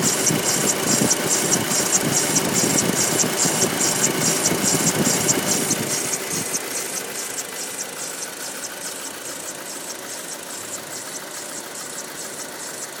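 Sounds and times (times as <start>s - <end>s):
car engine idling: 0.0s - 13.0s
rapid engine clacking: 0.0s - 13.0s.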